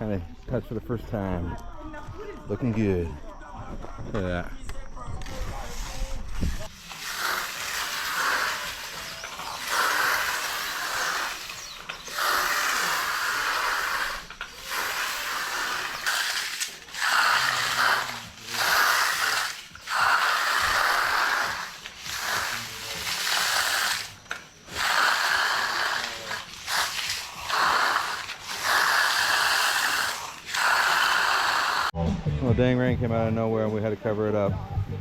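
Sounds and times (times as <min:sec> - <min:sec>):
tool scraping fresh concrete: 0:05.2 - 0:32.0.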